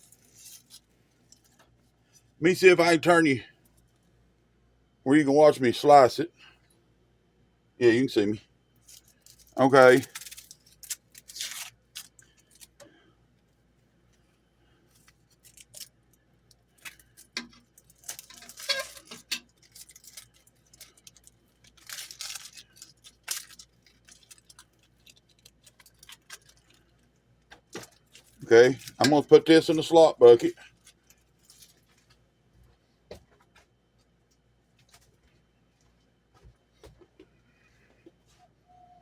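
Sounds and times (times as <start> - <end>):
onion skin rustling and tearing: 0.0 - 1.6, 8.8 - 12.8, 14.9 - 27.0.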